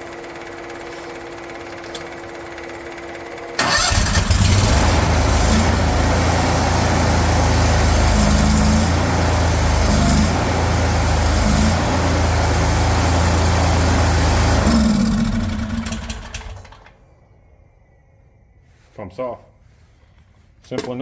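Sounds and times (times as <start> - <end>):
engine starting and running: 0.0 - 17.2
electric fuel pump humming: 3.5 - 16.8.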